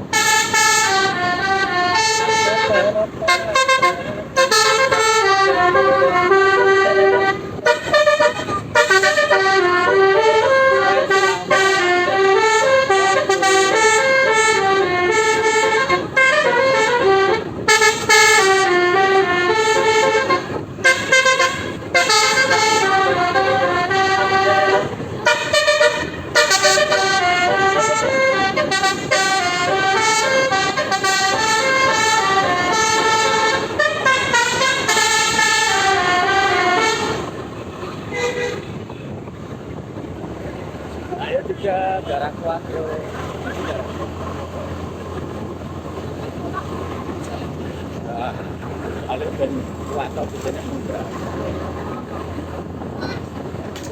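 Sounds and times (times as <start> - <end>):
musical bus horn tune: 0.0 - 40.3, 43.0 - 53.9.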